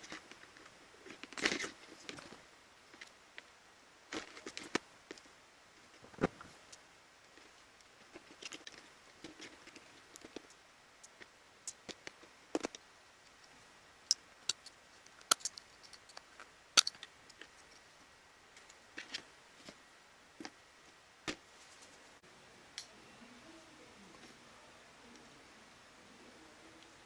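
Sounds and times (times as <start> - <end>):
light clicks and taps of tool parts: 8.4 - 17.9.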